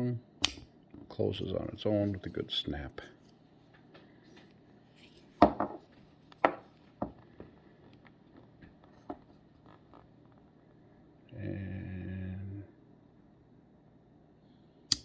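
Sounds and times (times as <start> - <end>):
pocket knife tools snapping shut: 0.4 - 0.6.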